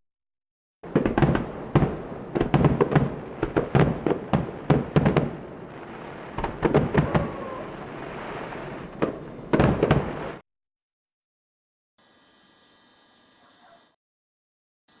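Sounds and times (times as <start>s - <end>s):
fireworks bangs and cracks: 0.8s - 10.4s.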